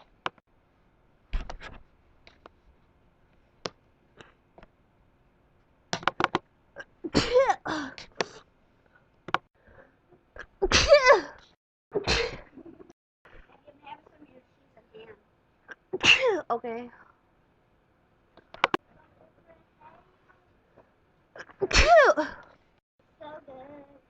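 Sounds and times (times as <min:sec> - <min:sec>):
catching breaths: 0:07.6 - 0:10.1
woman sneezing: 0:10.6 - 0:11.4, 0:16.0 - 0:16.5, 0:21.4 - 0:22.4.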